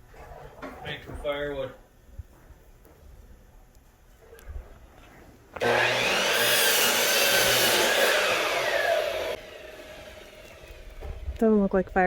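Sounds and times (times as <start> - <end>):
power saw cutting wood: 5.6 - 11.4.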